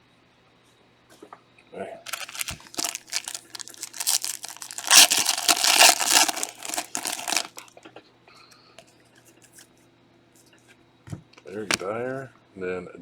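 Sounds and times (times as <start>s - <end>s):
foil wrapper tearing and crinkling: 2.1s - 7.7s.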